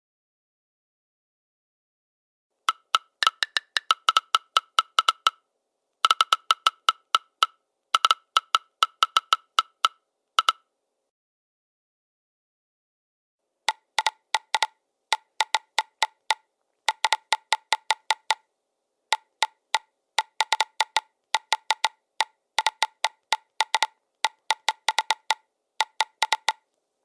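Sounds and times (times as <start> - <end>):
phone keyboard clicks: 2.7 - 5.4, 6.0 - 10.6, 13.7 - 18.4, 19.1 - 26.7.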